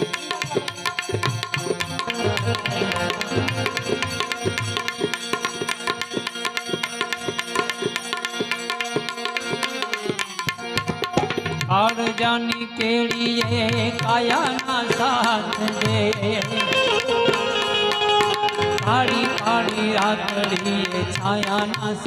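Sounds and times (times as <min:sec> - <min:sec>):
hand drums fast rhythm: 0:00.0 - 0:17.5
sustained melody line: 0:01.6 - 0:05.1.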